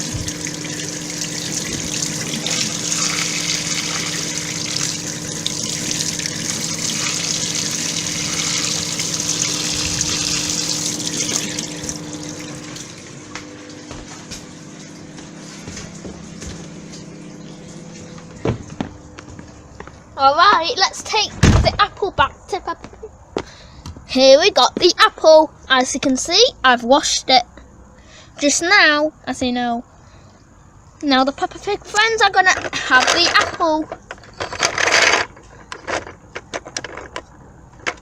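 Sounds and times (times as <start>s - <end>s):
water running from a tap: 0.0s - 13.9s
faint steady hum: 0.0s - 38.0s.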